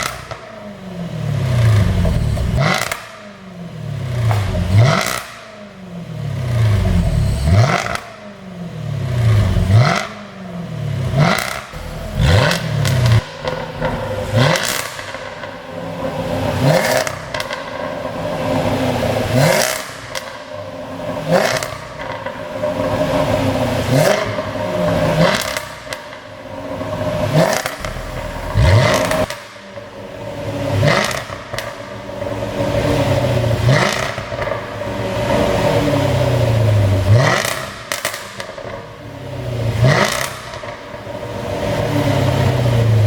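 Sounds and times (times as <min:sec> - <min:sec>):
car engine revving: 0:00.0 - 0:43.0
exhaust pops and crackles: 0:04.2 - 0:05.4, 0:11.2 - 0:15.5, 0:27.4 - 0:29.9, 0:37.2 - 0:38.8.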